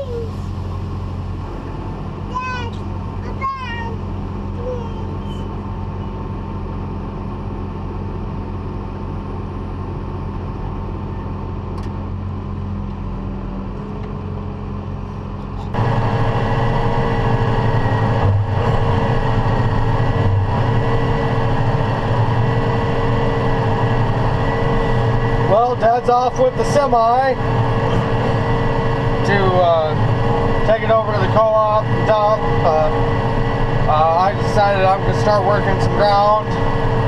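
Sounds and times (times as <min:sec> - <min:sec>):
farm vehicle engine running: 0:00.0 - 0:37.0.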